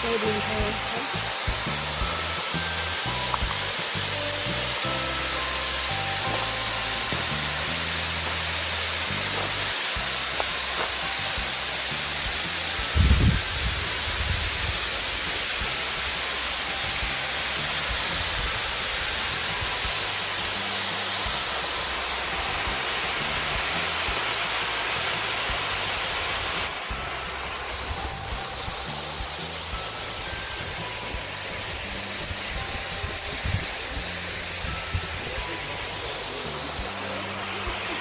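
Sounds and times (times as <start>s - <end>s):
waterfall rushing: 0.0s - 38.0s.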